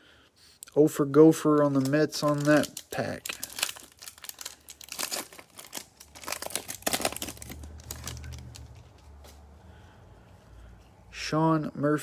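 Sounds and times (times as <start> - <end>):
foil wrapper tearing and crinkling: 1.5 - 8.9.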